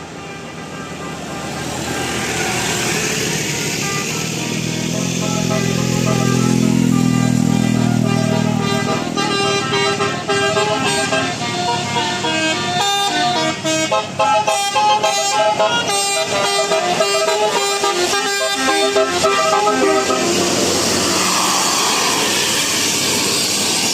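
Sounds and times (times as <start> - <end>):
musical bus horn tune: 0.0 - 23.2
low steady drone: 16.7 - 23.9.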